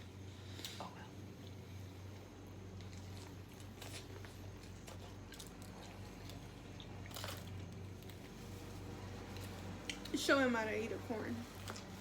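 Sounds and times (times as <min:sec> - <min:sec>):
steady low hum: 0:00.0 - 0:12.0
chewing and biting food: 0:02.6 - 0:10.1.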